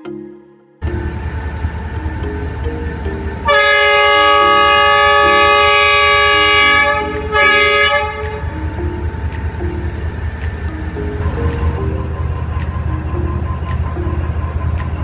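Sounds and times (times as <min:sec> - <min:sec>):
background music: 0:00.0 - 0:15.0
train horn blasts: 0:03.4 - 0:09.2.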